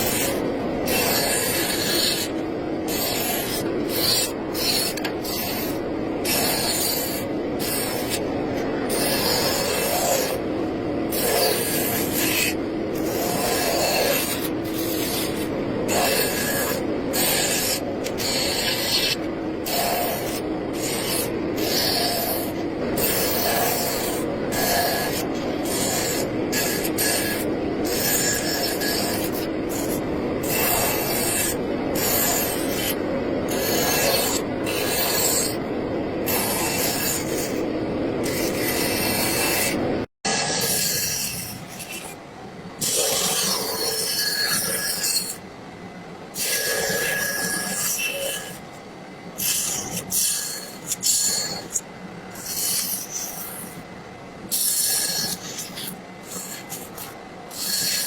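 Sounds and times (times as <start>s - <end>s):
hand tool scraping wood: 54.5s - 58.0s.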